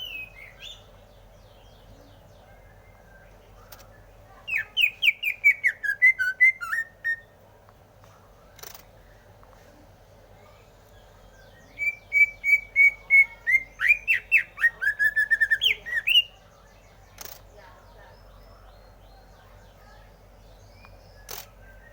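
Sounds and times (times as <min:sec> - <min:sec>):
bird whistling song: 0:00.0 - 0:00.9, 0:04.5 - 0:07.4, 0:11.2 - 0:16.4
faint steady hum: 0:00.0 - 0:21.9.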